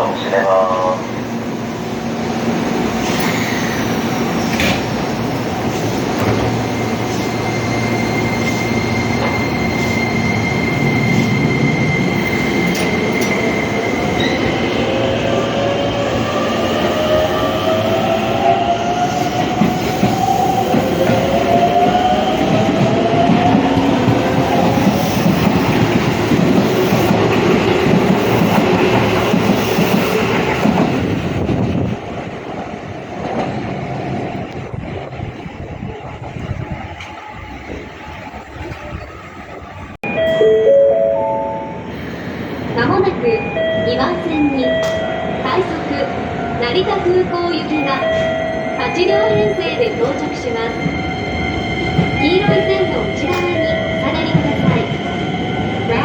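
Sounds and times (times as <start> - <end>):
train wheel and rail noise: 0.0 - 56.0
steady high tone: 40.0 - 46.2.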